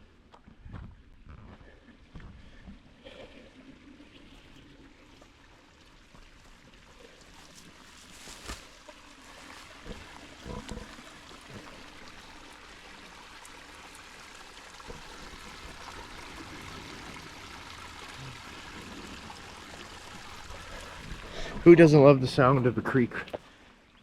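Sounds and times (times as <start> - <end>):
creek water rushing: 3.0 - 24.0.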